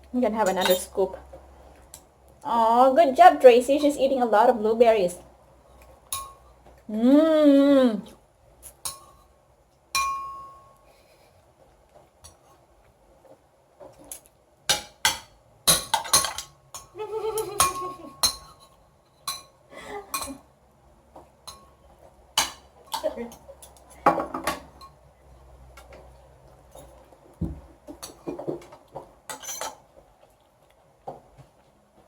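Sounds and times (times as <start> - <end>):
cutlery clinking on ceramic: 0.4 - 0.9, 6.1 - 6.5, 10.0 - 10.8, 14.7 - 17.0, 17.6 - 20.4, 21.4 - 21.8, 29.3 - 29.8
young child vocal sounds: 6.9 - 8.2.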